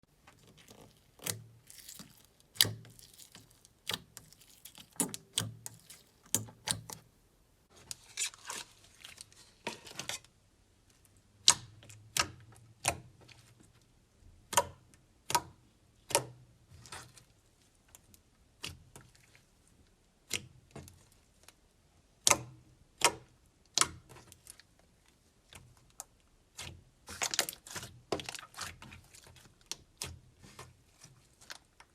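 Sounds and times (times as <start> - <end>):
slime popping and crackling: 0.2 - 7.0.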